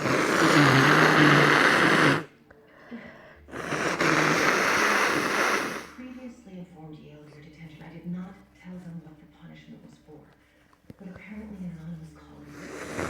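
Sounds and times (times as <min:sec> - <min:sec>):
congested nose blowing: 0:00.0 - 0:02.4, 0:03.1 - 0:06.1, 0:12.5 - 0:13.0.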